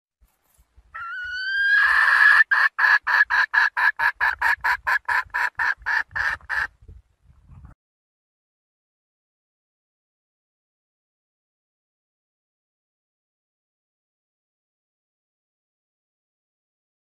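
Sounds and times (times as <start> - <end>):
hen rising call: 0.9 - 2.9
hen clucking: 1.0 - 6.8.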